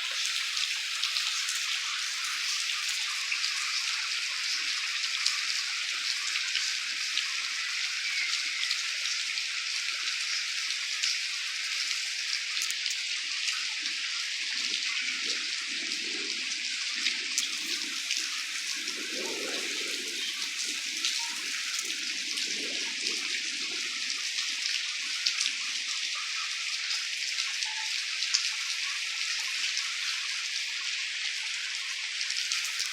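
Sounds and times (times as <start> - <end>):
steady rain falling: 0.0 - 32.9.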